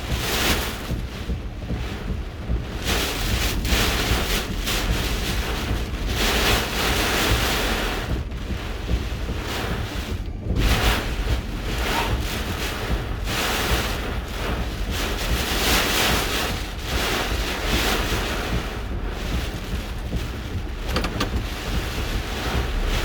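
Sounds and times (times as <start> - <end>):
heavy low rumble: 18.4 - 23.0.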